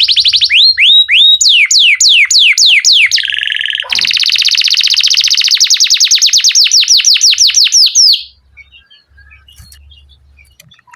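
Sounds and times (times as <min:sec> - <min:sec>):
canary singing trills: 0:00.0 - 0:10.9
faint chirps: 0:03.1 - 0:10.9.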